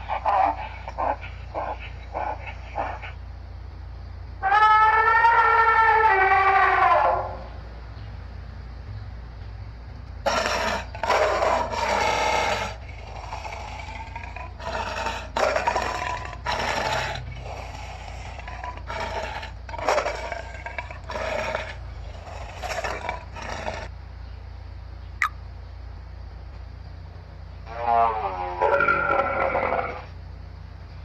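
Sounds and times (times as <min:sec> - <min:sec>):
animal making harsh calls: 0:00.0 - 0:03.2, 0:04.4 - 0:07.6, 0:10.3 - 0:23.9, 0:27.7 - 0:30.1.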